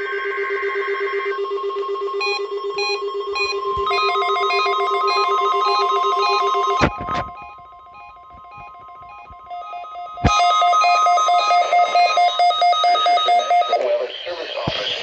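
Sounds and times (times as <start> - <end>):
steady test tone: 0.0 - 15.0
pulsing stepping tones: 2.2 - 13.7.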